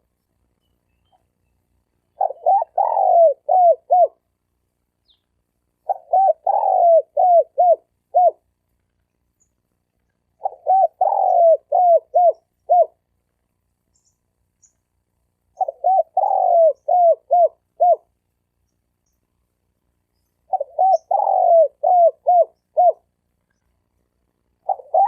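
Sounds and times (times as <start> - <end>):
dove cooing: 2.1 - 4.2, 5.8 - 8.5, 10.4 - 13.0, 15.6 - 18.1, 20.5 - 23.1, 24.6 - 25.0.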